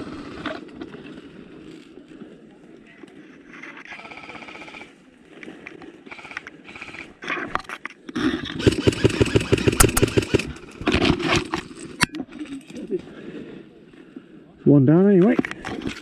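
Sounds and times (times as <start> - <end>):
airsoft rifles firing on full auto: 3.9 - 5.0, 6.1 - 7.3, 8.4 - 11.5.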